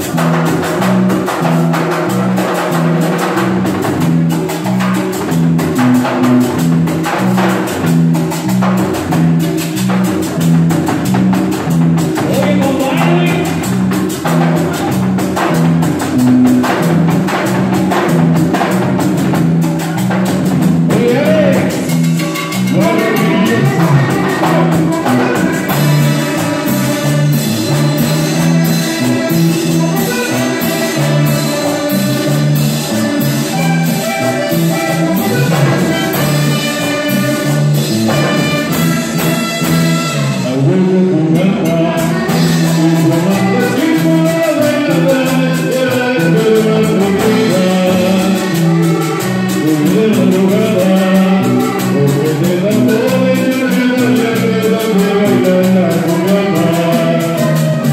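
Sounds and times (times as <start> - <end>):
salsa dance band with brass: 0.0 - 57.9
person singing: 12.2 - 13.7, 20.9 - 21.9, 22.6 - 32.3, 40.2 - 57.9.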